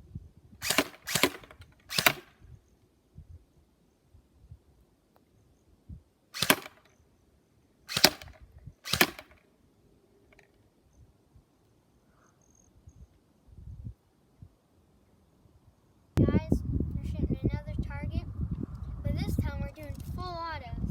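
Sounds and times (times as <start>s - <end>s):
airsoft gun shots: 0.6s - 2.3s, 6.4s - 6.8s, 7.9s - 9.4s.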